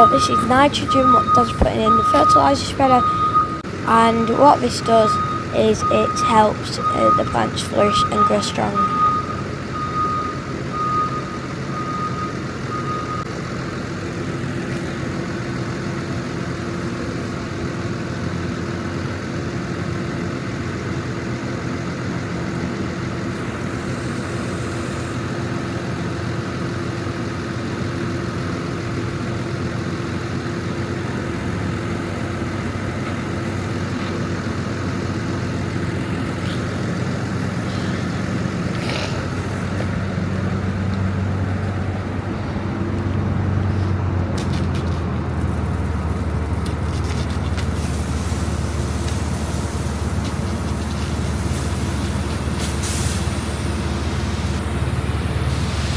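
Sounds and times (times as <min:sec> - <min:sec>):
reversing alarm beeping: 0:00.0 - 0:13.3
diesel loader engine running: 0:00.0 - 0:55.9.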